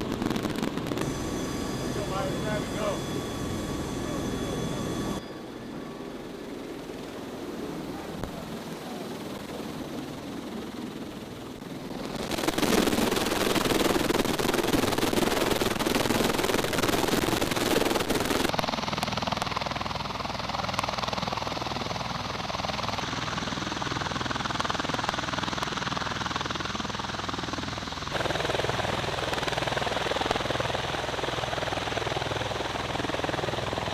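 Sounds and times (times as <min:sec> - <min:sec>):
low hum: 0:00.0 - 0:08.8
tiltrotor aircraft engine running: 0:00.0 - 0:33.9.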